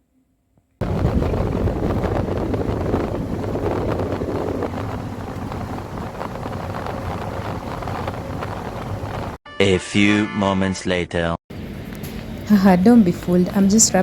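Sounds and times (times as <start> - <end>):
low rumble: 0.8 - 9.4
wind buffeting microphone: 0.8 - 9.4.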